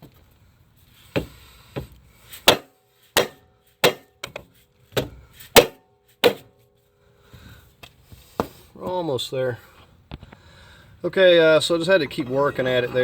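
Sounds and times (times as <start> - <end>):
hammer striking metal: 2.5 - 4.4, 5.6 - 6.5.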